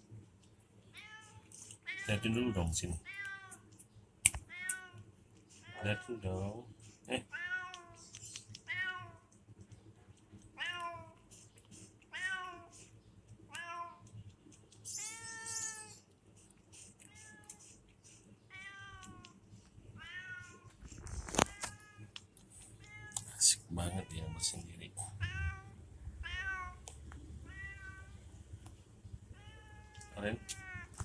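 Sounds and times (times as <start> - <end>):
cat meowing: 0.9 - 3.6, 7.3 - 9.2, 10.6 - 11.2, 12.1 - 12.7, 13.5 - 14.1, 14.9 - 16.0, 18.5 - 19.3, 20.0 - 22.2, 22.8 - 28.4, 29.3 - 31.0.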